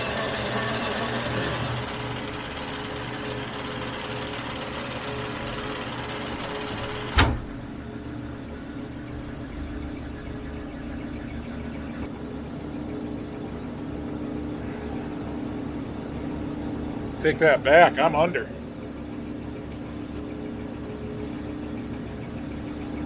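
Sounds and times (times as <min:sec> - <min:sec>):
metal lathe humming: 0:00.0 - 0:10.6.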